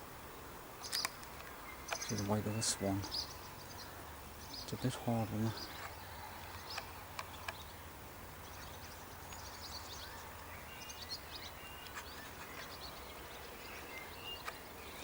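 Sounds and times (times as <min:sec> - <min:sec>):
songbirds chirping and trilling: 0:00.0 - 0:15.0
faint clicks: 0:00.8 - 0:02.2.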